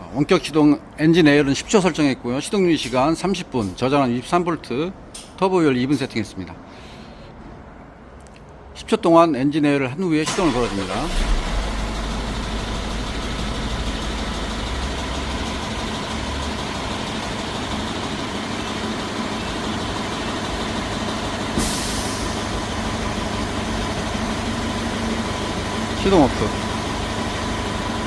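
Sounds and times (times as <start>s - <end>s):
diesel engine idling: 10.2s - 28.0s
air hiss: 21.6s - 22.5s.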